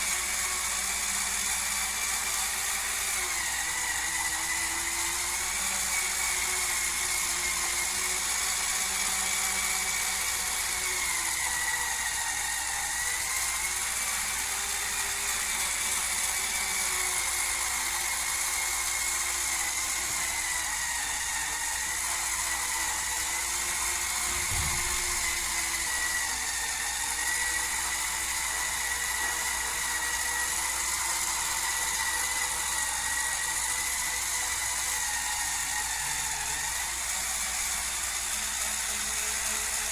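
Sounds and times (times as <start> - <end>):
spin scrubber motor whining: 0.0 - 39.9
low thump: 24.3 - 25.3.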